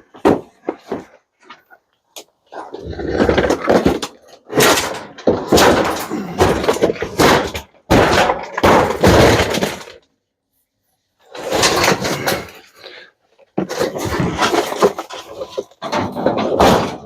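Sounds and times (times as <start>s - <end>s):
metal parts clattering and scraping: 2.8s - 10.0s, 11.2s - 12.9s, 13.5s - 17.0s.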